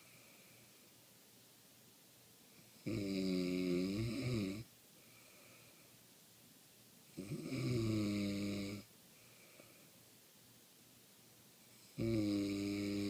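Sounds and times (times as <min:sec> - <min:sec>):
quiet breathing: 0:00.0 - 0:01.2, 0:02.4 - 0:06.4, 0:07.1 - 0:13.0
man snoring: 0:02.8 - 0:04.7, 0:07.2 - 0:08.9, 0:11.8 - 0:13.0.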